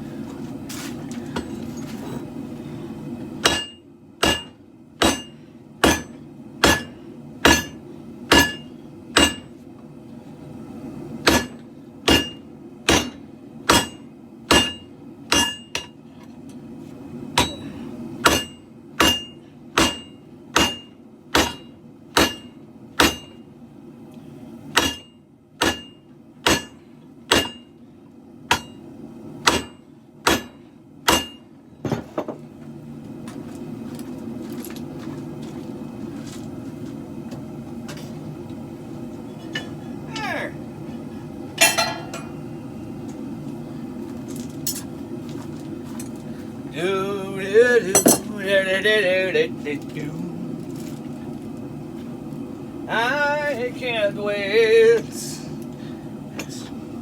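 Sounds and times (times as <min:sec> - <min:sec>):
low roar of gas forge: 0:00.0 - 0:57.0
hammer ringing on anvil: 0:03.4 - 0:09.5, 0:11.3 - 0:15.9, 0:17.4 - 0:17.6, 0:18.3 - 0:23.4, 0:24.8 - 0:27.7, 0:29.5 - 0:31.5, 0:41.6 - 0:42.4, 0:47.9 - 0:48.3.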